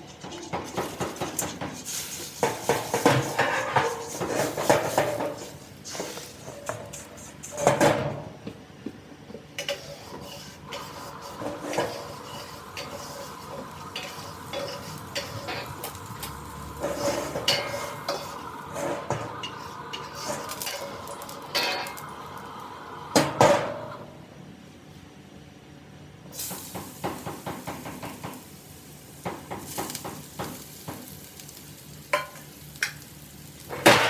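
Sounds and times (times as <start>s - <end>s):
faint steady hum: 8.8s - 25.7s
metal spatula scraping a wok: 9.6s - 22.0s.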